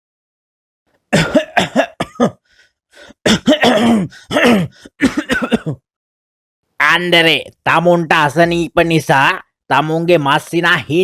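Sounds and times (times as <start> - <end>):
man coughing: 1.1 - 2.4, 3.1 - 5.8.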